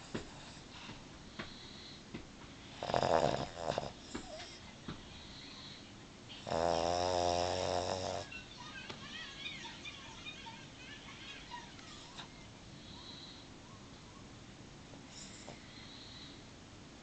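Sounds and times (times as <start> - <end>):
dog snoring: 2.7 - 4.6, 6.4 - 8.3.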